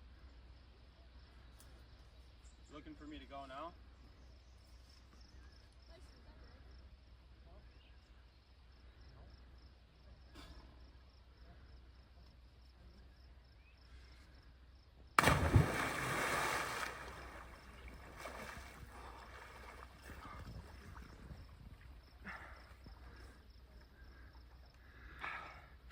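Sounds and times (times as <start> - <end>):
big splash into water: 15.2 - 20.4
churning water: 15.2 - 21.2
soft splashing in water: 15.2 - 21.5.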